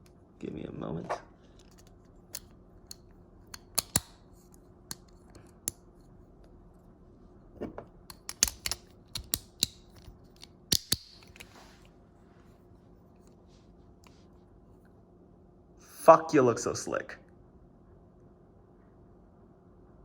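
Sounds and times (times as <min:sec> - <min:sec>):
plastic toy parts clicking: 0:01.6 - 0:05.8, 0:08.1 - 0:11.5.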